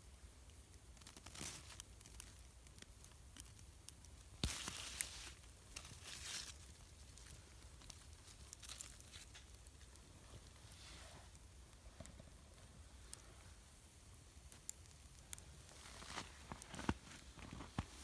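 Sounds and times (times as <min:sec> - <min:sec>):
dry grass and twigs rustling: 0:04.4 - 0:10.6.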